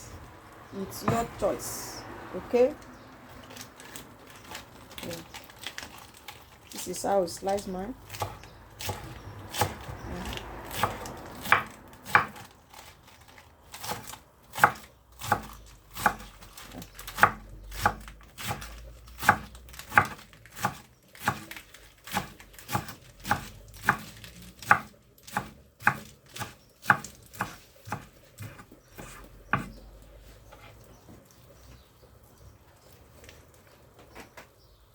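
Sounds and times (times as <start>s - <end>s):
knife chopping on board: 8.1s - 12.5s, 13.8s - 29.8s.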